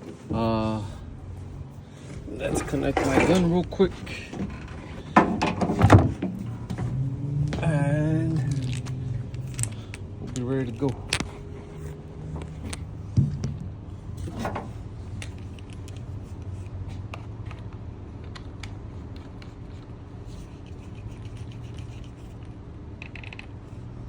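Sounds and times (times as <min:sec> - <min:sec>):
steady low hum: 0:00.0 - 0:24.0
clicks and knocks of gear handled: 0:08.3 - 0:11.4.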